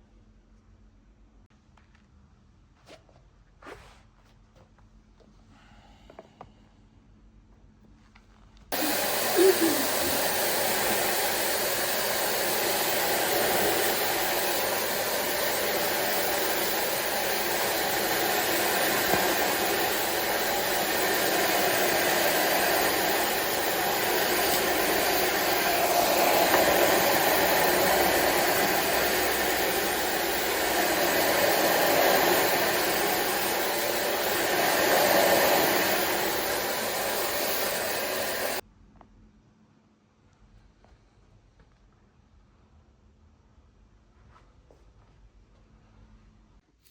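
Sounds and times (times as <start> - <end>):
vacuum cleaner running: 8.7 - 38.6.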